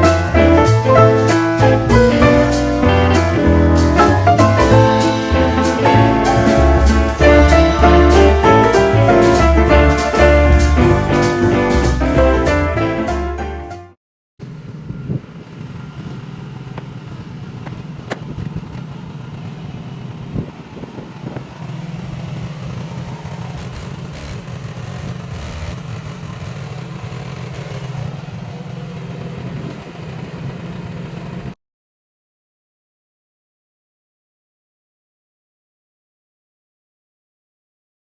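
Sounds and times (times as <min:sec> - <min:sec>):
small engine running: 0:14.4 - 0:31.6.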